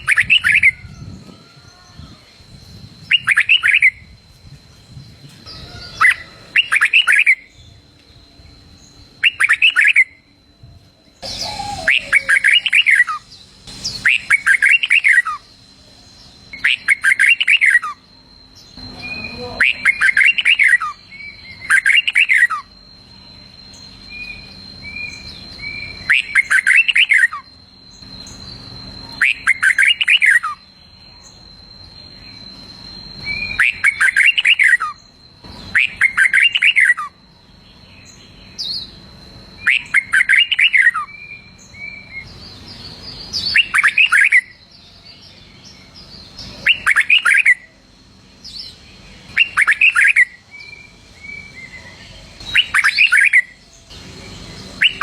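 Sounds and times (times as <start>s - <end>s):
bird song phrases: 0.0s - 55.0s
soft bird chirps: 0.0s - 55.0s.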